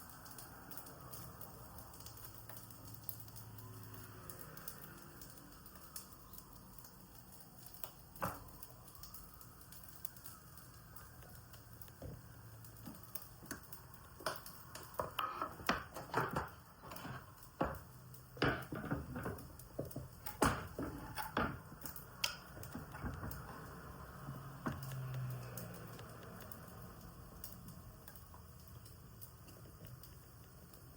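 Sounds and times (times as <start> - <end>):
utensils and cookware clattering: 14.3 - 23.6.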